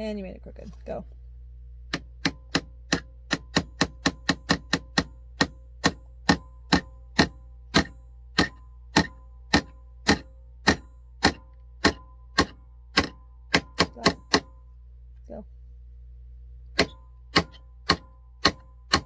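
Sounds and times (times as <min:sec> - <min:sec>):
hammer striking nail into wood: 0:01.9 - 0:14.6, 0:16.8 - 0:19.0.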